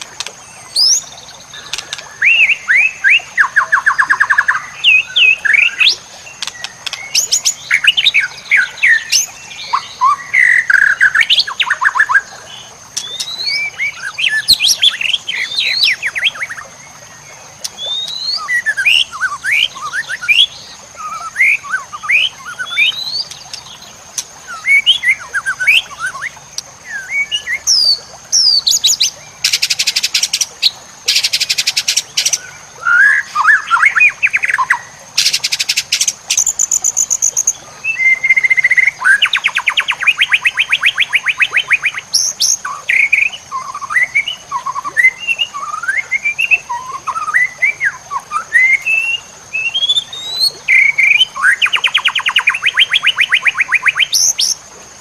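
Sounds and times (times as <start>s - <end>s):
bird singing whistles and trills: 0.6s - 16.8s, 17.6s - 23.8s, 24.4s - 54.6s.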